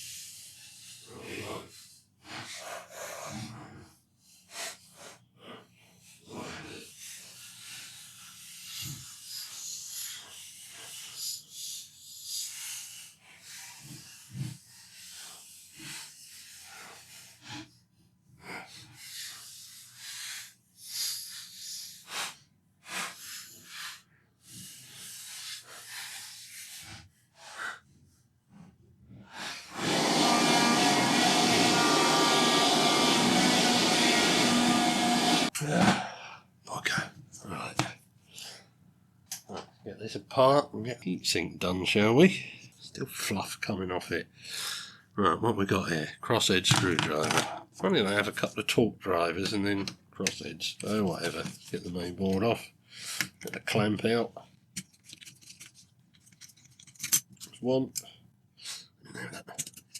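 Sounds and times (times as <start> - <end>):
scratchy brushing strokes: 29.6 - 35.6.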